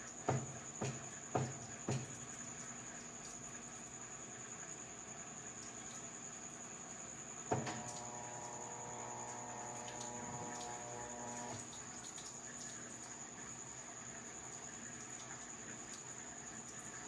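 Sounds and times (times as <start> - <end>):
washing machine hum and whine: 0.0 - 17.0
water running into tub: 7.4 - 17.0.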